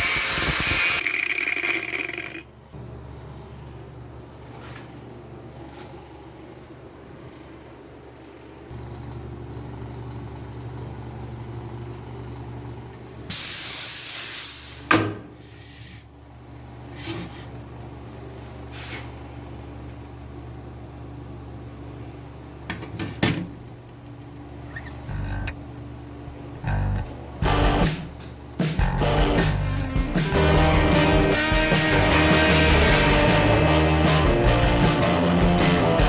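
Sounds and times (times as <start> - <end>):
spray hiss: 13.0 - 14.9
steady low hum: 23.6 - 36.0.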